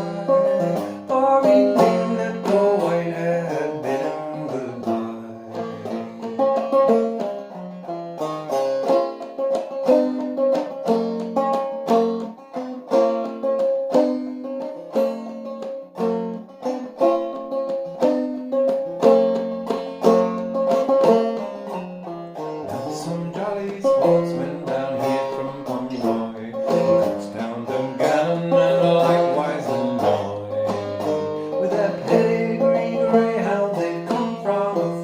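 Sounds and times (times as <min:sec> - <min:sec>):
clawhammer banjo playing: 0:00.0 - 0:35.0.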